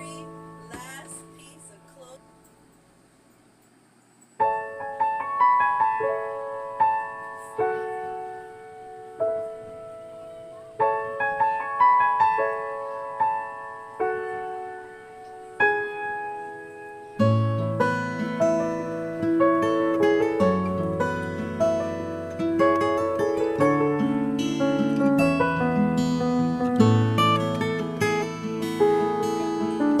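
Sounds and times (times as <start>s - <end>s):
solo piano melody: 0.0s - 2.7s, 4.4s - 30.0s
strummed guitar: 17.2s - 30.0s.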